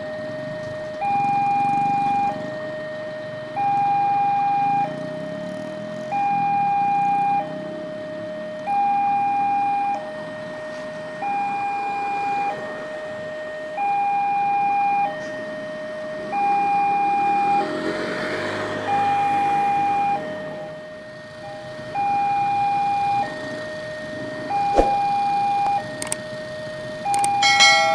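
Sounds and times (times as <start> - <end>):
level-crossing alarm two-tone signal: 21.4 - 26.0, 26.6 - 27.9
rushing noise: 24.6 - 25.2.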